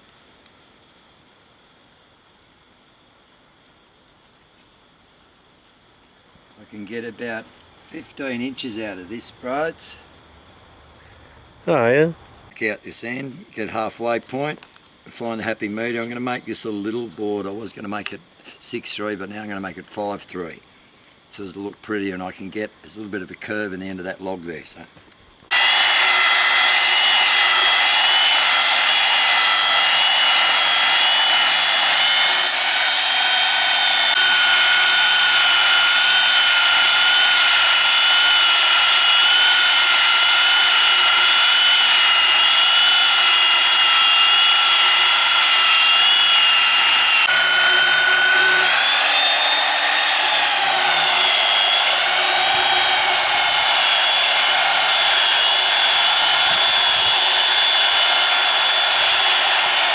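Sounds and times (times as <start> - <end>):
chainsaw cutting timber: 25.5 - 59.9.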